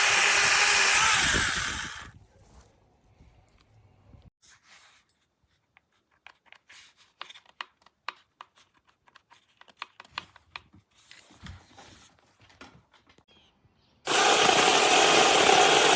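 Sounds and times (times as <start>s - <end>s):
mini chainsaw cutting wood: 0.0s - 2.1s, 14.1s - 15.9s.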